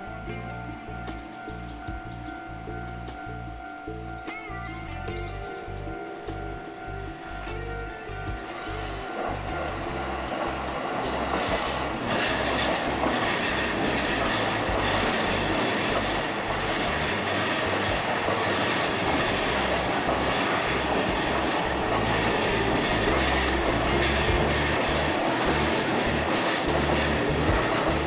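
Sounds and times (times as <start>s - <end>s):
train passing with rumble: 0.0s - 28.0s
wheels clacking over rail joints: 7.4s - 28.0s.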